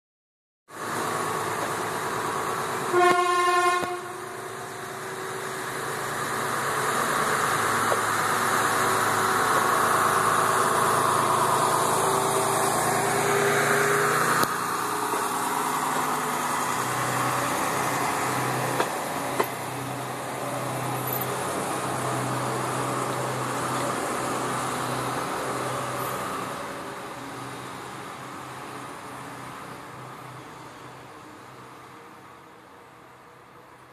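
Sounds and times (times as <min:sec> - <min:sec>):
diesel train engine: 0:00.7 - 0:33.9
train horn: 0:02.9 - 0:04.4.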